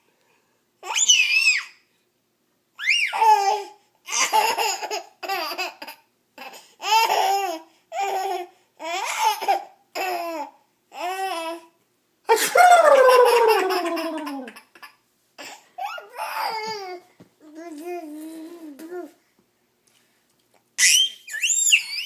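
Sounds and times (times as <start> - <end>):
baby laughing: 3.1 - 8.4, 12.3 - 17.0.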